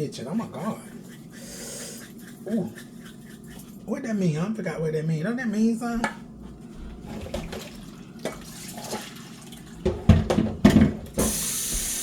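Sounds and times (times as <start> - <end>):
dishes knocking and clattering: 7.0 - 9.1, 9.8 - 11.4
kitchen tap water running: 7.1 - 12.0.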